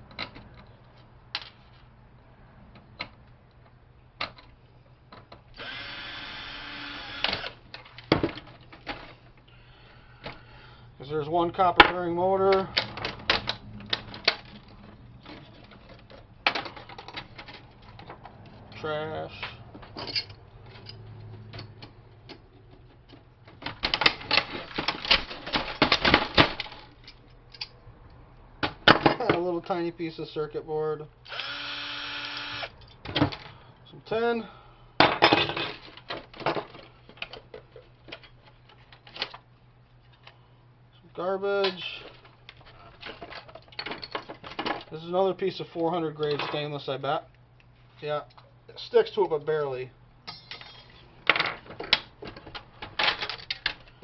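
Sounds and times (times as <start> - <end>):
power drill spinning a screw: 5.6 - 7.6, 31.3 - 32.7
printer parts clicking and clattering: 11.8 - 18.4, 21.5 - 27.7, 50.3 - 54.0.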